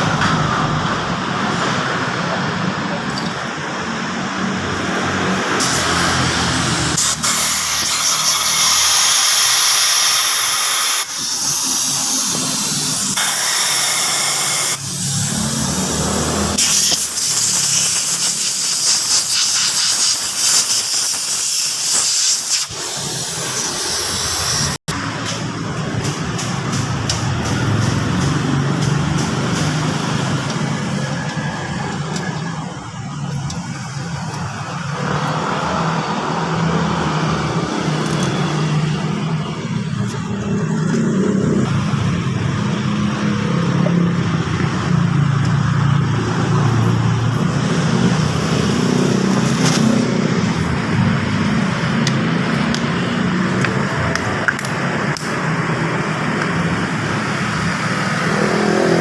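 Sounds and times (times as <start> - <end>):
vehicle engine hum: 11.1 - 59.0.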